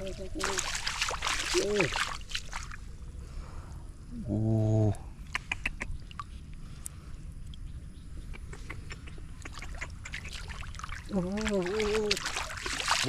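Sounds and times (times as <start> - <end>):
shallow water splashing: 0.0 - 2.9, 9.4 - 13.0.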